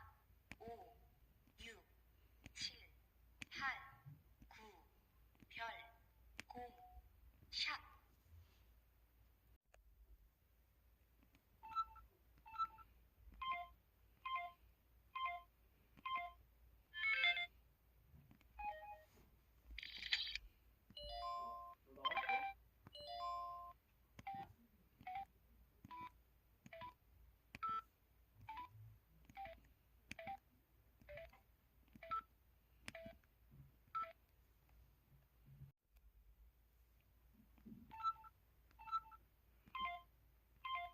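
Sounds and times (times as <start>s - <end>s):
phone keypad beeps: 11.6s - 14.6s, 15.2s - 16.4s, 27.6s - 30.4s, 32.0s - 32.3s, 32.9s - 33.2s, 34.0s - 34.2s, 37.9s - 40.9s.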